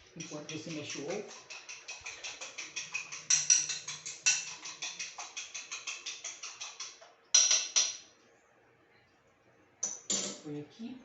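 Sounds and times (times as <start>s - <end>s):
fork beating eggs in bowl: 0.0s - 8.0s.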